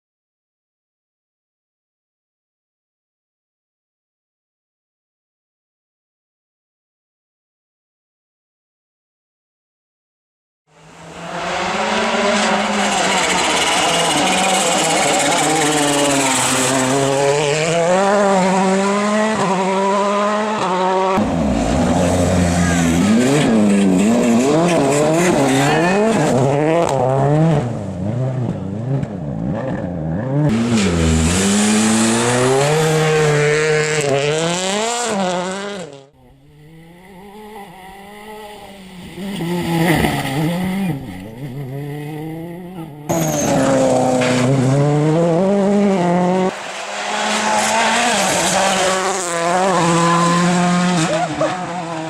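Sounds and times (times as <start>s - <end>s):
rally car engines revving: 10.7s - 52.0s.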